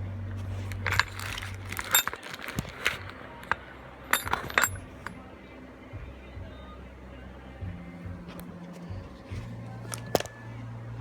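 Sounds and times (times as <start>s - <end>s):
metal tools clinking: 0.3s - 5.2s.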